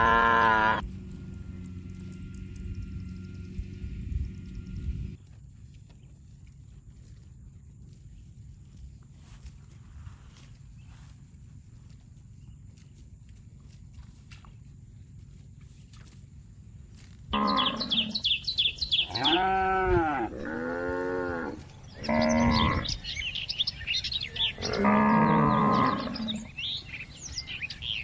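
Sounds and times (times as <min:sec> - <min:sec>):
cows mooing: 0:00.0 - 0:00.9, 0:17.3 - 0:28.0
birds chirping: 0:00.0 - 0:05.2, 0:05.9 - 0:28.0.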